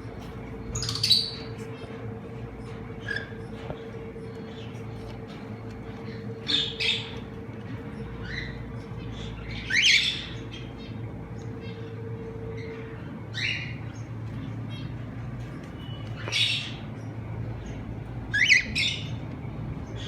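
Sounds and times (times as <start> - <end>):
steady hum: 0.0 - 20.0
cockatiels squawking: 0.2 - 2.0, 3.0 - 11.0, 18.3 - 19.2.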